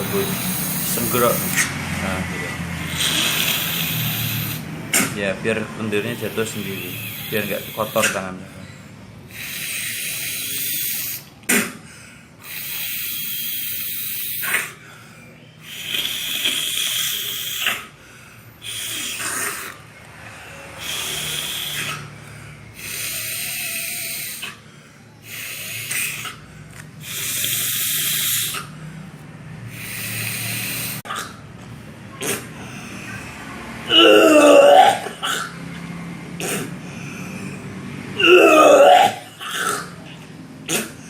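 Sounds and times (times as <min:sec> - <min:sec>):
person snorting through nose: 0:00.0 - 0:01.7, 0:02.8 - 0:05.1, 0:15.6 - 0:18.0, 0:18.6 - 0:19.9, 0:20.7 - 0:24.6, 0:25.2 - 0:28.8, 0:29.7 - 0:31.4, 0:32.2 - 0:35.6, 0:36.4 - 0:41.0.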